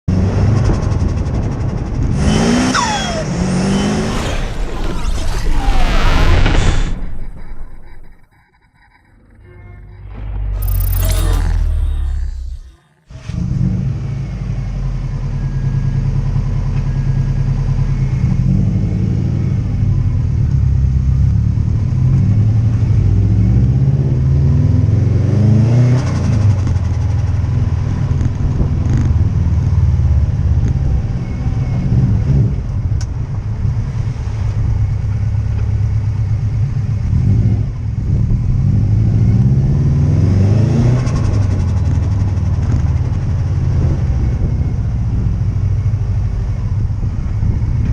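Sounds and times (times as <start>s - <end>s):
car engine revving: 0.1s - 14.6s
turbo flutter: 4.1s - 13.4s.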